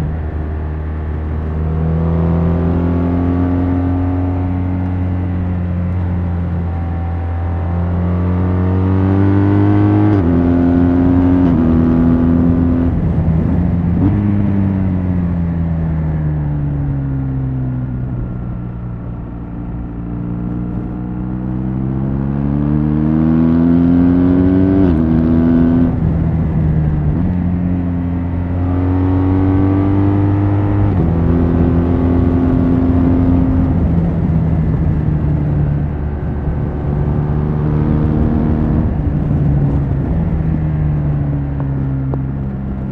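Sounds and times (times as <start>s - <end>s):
motorcycle engine revving: 0.0s - 16.9s, 18.0s - 42.9s.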